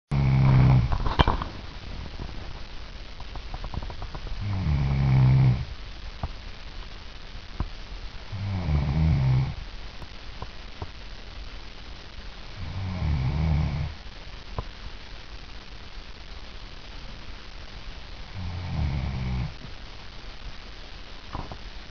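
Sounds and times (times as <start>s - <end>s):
woman snoring: 0.1s - 1.0s, 4.4s - 5.7s, 8.3s - 9.6s, 12.5s - 14.0s, 18.3s - 19.6s.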